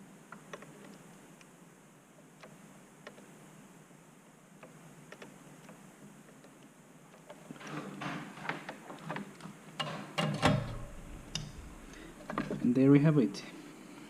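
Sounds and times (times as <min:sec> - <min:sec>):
low rumble: 0:10.8 - 0:12.3.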